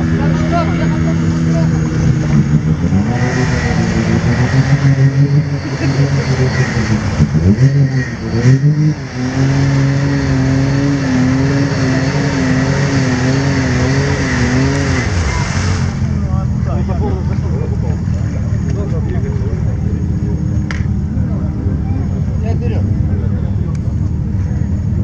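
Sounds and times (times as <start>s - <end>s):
engine revving hard: 0.0s - 16.4s.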